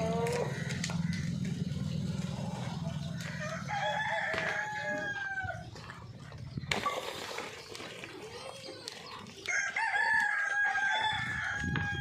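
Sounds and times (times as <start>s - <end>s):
rooster crowing: 3.4s - 5.6s, 9.5s - 12.0s.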